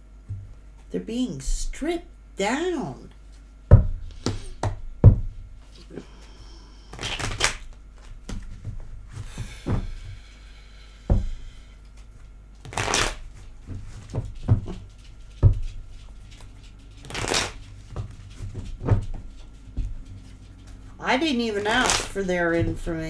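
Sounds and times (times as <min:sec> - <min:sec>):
cards knocking against table: 0:03.7 - 0:05.9, 0:12.6 - 0:21.0
cards being shuffled: 0:06.9 - 0:09.7, 0:11.9 - 0:23.0.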